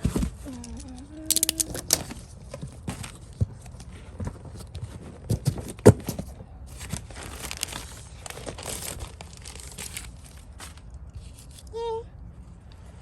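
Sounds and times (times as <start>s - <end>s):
packing paper crinkling: 0.0s - 11.7s
packing tape tearing: 0.1s - 3.2s, 5.2s - 11.7s
knocks against cardboard box: 5.1s - 6.3s.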